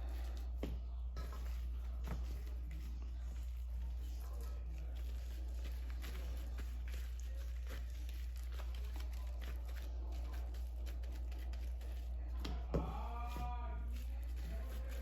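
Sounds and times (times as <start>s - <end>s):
hands shaping ground beef: 0.0s - 15.0s.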